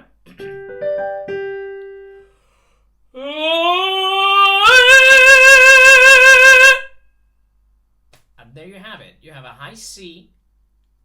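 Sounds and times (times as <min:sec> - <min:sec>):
piano note: 0:00.5 - 0:02.3.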